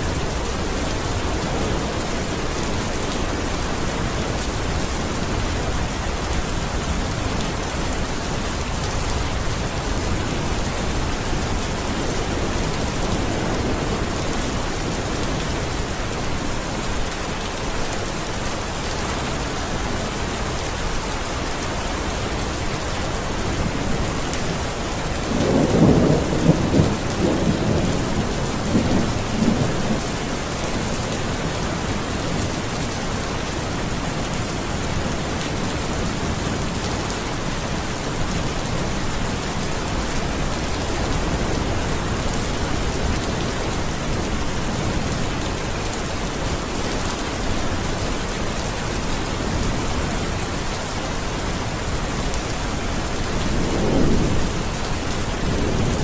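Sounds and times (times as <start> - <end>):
steady rain falling: 0.0 - 56.0
thunder rumbling: 25.2 - 30.2, 53.4 - 56.0.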